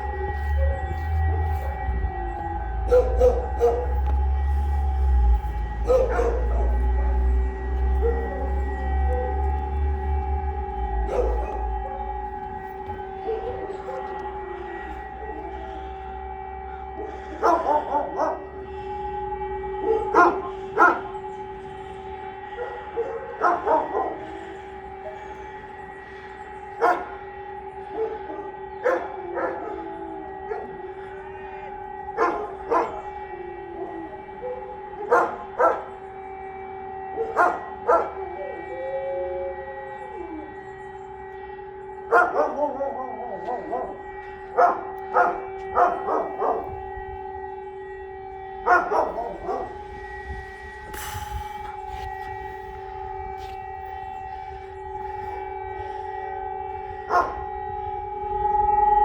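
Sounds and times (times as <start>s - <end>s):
electronic sirens steady tone: 0.0s - 59.0s
dog barking: 2.8s - 4.5s, 5.7s - 9.6s, 11.0s - 11.8s, 17.0s - 18.5s, 19.8s - 21.2s, 22.6s - 25.2s, 26.8s - 27.1s, 27.9s - 29.8s, 32.2s - 33.1s, 34.4s - 35.9s, 37.2s - 38.2s, 42.1s - 44.0s, 44.6s - 46.8s, 48.6s - 49.8s, 57.1s - 57.4s.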